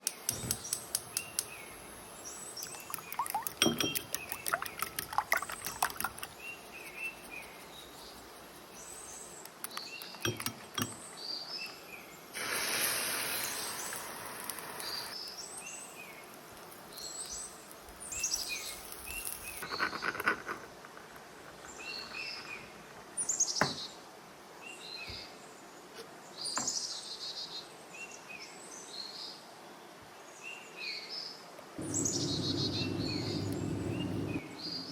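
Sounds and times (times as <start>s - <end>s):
birds chirping: 0.4s - 12.1s, 31.8s - 34.9s
steady hiss: 12.3s - 19.6s.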